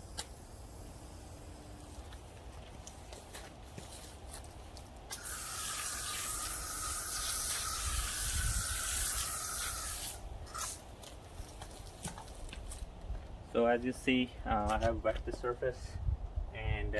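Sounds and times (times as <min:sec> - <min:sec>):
water spraying on concrete: 0:05.1 - 0:10.8.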